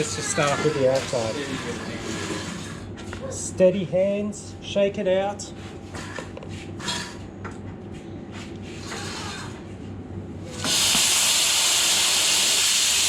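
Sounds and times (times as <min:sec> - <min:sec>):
plasma cutter hissing: 0:10.6 - 0:13.0.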